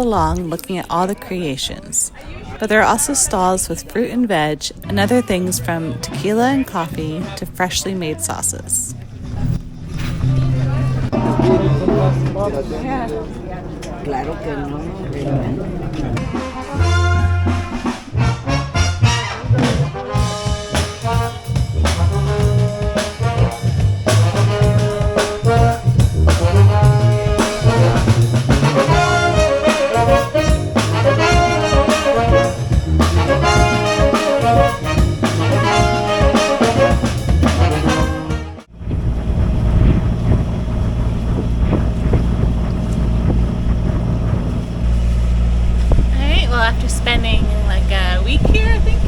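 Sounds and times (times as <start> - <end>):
low rumble: 2.1 - 49.0
wind noise on microphone: 9.0 - 49.0
brass band music: 10.0 - 14.8, 15.4 - 40.0
percussive beat: 16.2 - 38.6.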